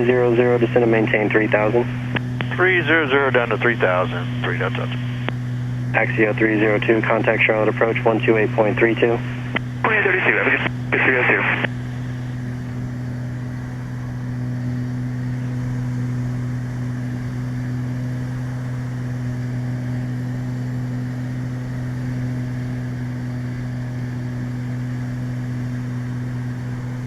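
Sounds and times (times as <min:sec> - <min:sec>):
aircraft piston engines droning: 0:00.0 - 0:27.0.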